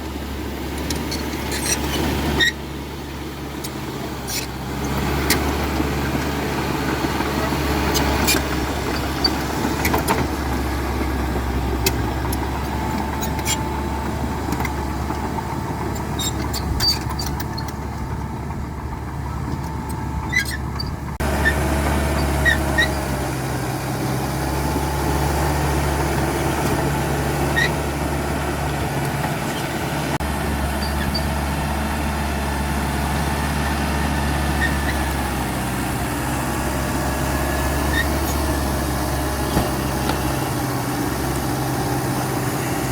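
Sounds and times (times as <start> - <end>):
bulldozer diesel engine running: 0.0 - 42.9.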